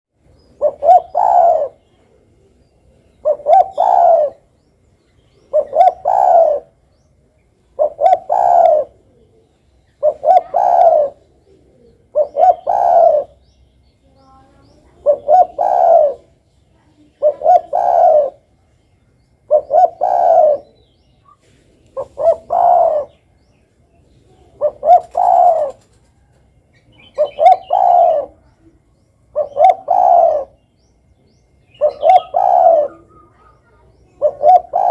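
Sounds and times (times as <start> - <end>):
dove cooing: 0.5 - 4.5, 5.4 - 6.8, 7.7 - 13.4, 14.8 - 16.4, 17.1 - 18.5, 19.4 - 23.5, 24.2 - 30.6, 31.8 - 34.9.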